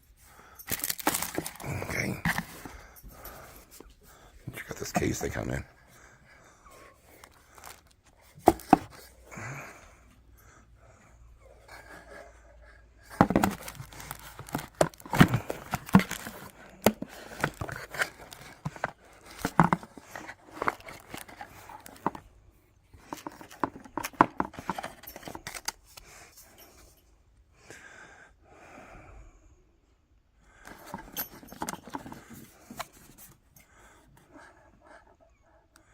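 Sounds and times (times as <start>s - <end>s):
packaging crinkling and tearing: 0.7s - 2.7s, 13.2s - 22.2s.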